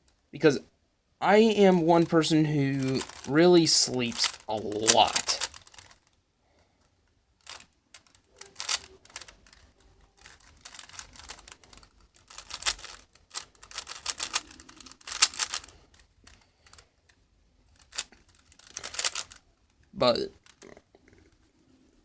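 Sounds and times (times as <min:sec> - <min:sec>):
puzzle cube plastic clicks: 0:02.7 - 0:06.2, 0:07.4 - 0:20.7.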